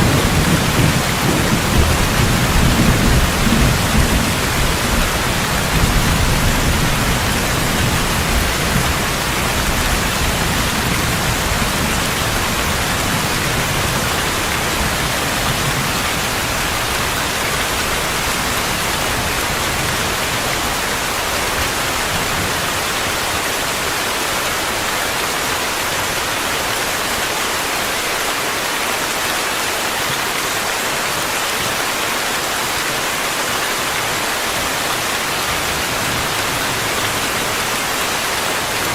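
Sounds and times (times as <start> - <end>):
distant thunder rumble: 0.0 - 17.1
heavy rain hiss: 0.0 - 38.9.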